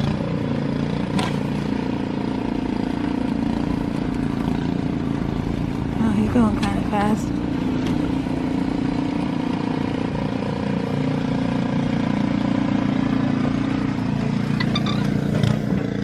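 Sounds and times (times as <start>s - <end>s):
snowblower engine running: 0.0s - 16.0s.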